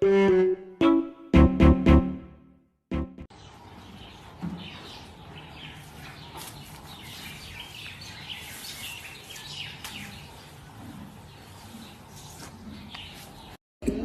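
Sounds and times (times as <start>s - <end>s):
small birds chirping: 3.3s - 13.6s
outdoor background noise: 3.3s - 14.0s.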